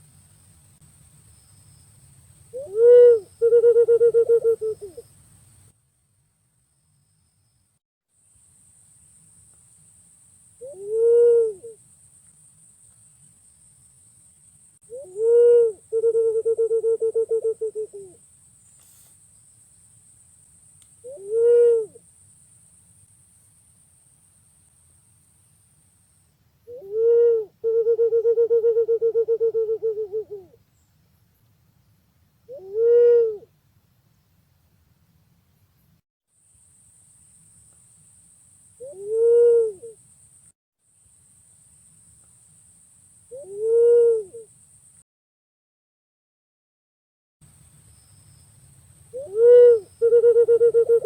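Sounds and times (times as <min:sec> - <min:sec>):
recording hiss: 0:00.0 - 0:07.4, 0:08.2 - 0:32.7, 0:33.3 - 0:45.0
pigeon cooing: 0:02.6 - 0:05.0, 0:10.6 - 0:11.8, 0:14.9 - 0:18.2, 0:21.1 - 0:22.0, 0:26.7 - 0:30.6, 0:32.5 - 0:33.5, 0:38.8 - 0:40.0, 0:43.4 - 0:44.5, 0:49.2 - 0:51.0
pigeon whistled call: 0:02.6 - 0:05.0, 0:43.3 - 0:44.5, 0:49.1 - 0:51.0.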